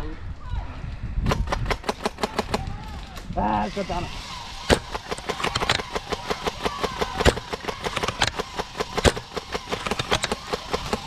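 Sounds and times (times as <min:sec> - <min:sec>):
airsoft guns firing: 0:01.2 - 0:03.3, 0:04.5 - 0:11.0.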